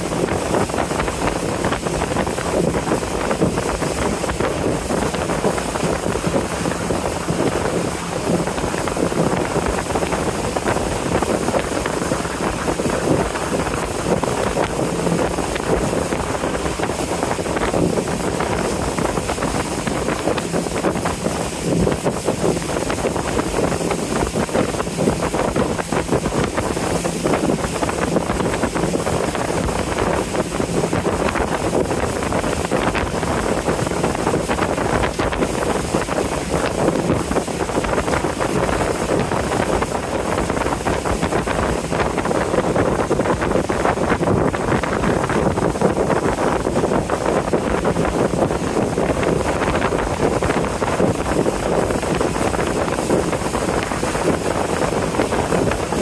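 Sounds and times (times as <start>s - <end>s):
boat engine humming: 0.0s - 56.0s
wind on microphone: 0.0s - 56.0s.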